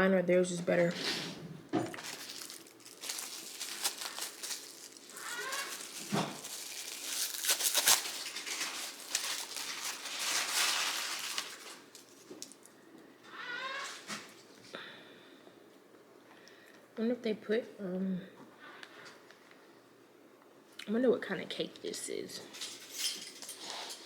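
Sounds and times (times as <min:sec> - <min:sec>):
plastic packaging crinkling: 0:01.9 - 0:12.8.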